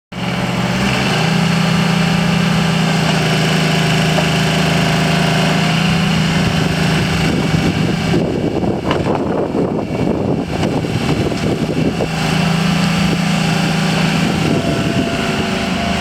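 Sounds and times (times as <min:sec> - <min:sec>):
excavator diesel engine humming: 0:00.1 - 0:16.0.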